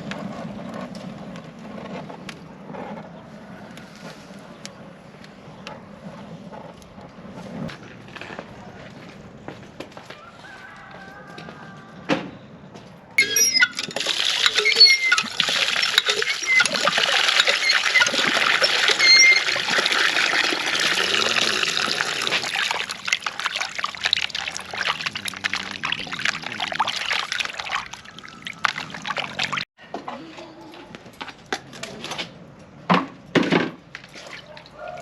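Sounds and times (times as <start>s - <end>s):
water pouring and splashing: 13.2s - 29.7s, 34.0s - 35.0s.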